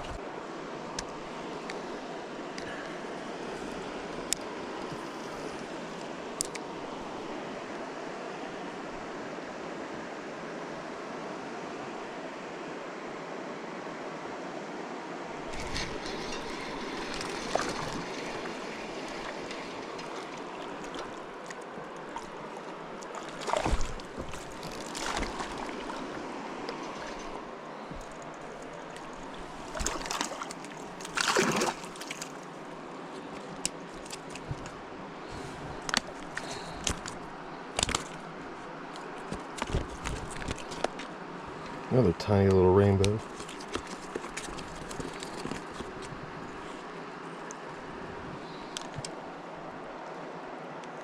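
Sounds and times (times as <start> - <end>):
river water running: 0.0 - 51.0
splashes in water: 15.5 - 26.2, 28.0 - 32.4.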